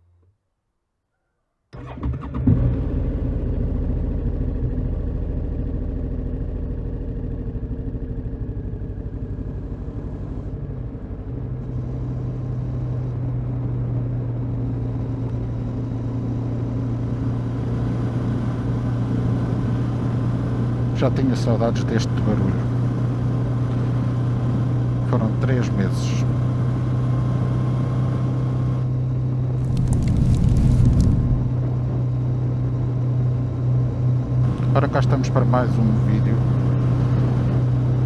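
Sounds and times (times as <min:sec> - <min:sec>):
motorcycle engine starting and idling: 0:01.8 - 0:03.6.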